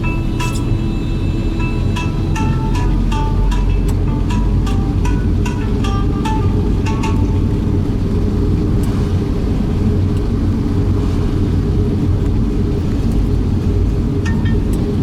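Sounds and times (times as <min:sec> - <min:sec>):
strong wind buffeting microphone: 0:06.2 - 0:15.0.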